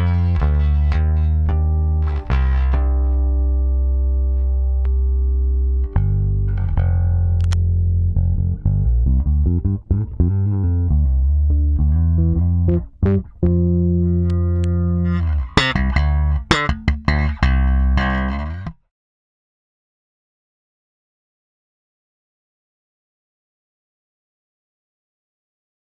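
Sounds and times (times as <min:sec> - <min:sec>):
deep electric bass notes: 0:00.0 - 0:18.8
slapped bass notes: 0:00.0 - 0:18.8.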